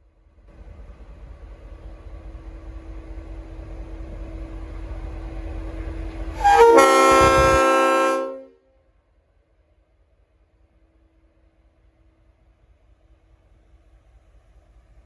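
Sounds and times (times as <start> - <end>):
locomotive air horn chord: 6.4 - 8.6.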